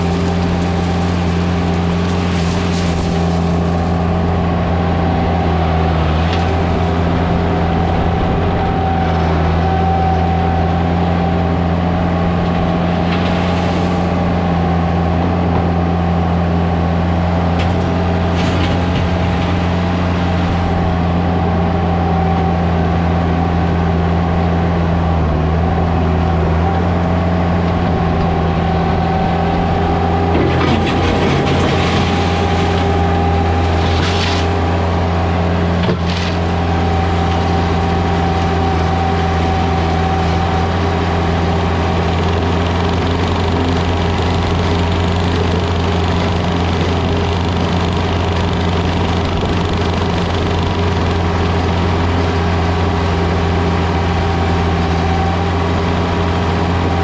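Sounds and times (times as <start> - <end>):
skid loader engine running: 0.0 - 57.0
metal clanks and scrapes: 30.3 - 34.6.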